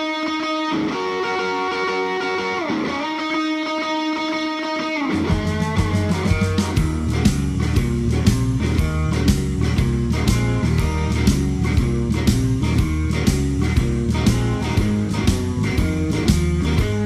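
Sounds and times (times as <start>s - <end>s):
bass guitar: 0.0s - 17.0s
electric guitar chords: 0.0s - 17.0s
drums playing steady beat: 5.1s - 17.0s.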